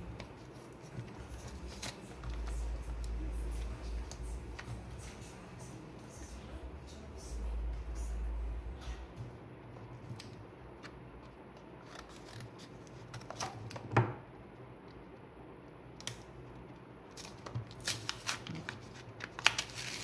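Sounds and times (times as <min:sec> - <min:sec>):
packaging clicks and crackles: 0:17.1 - 0:20.0.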